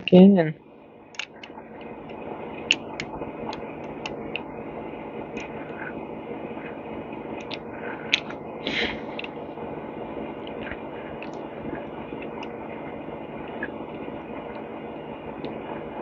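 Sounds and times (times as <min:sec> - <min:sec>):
steady background hum: 0:00.0 - 0:16.0
small metal parts clicking: 0:01.1 - 0:01.5.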